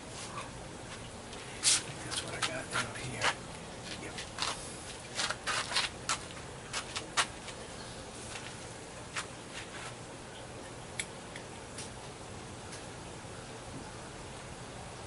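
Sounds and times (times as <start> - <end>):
background hiss: 0.0 - 15.0.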